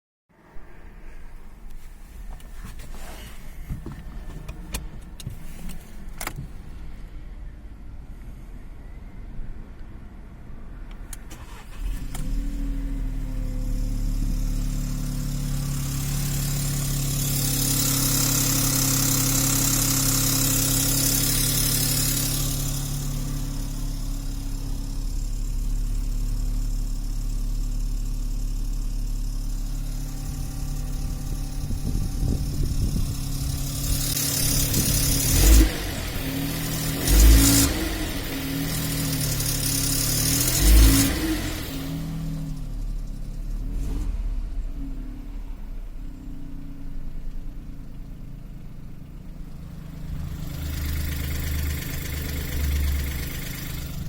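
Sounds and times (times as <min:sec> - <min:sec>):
car engine starting and idling: 0:00.4 - 0:54.0
engine rattling: 0:11.0 - 0:54.0.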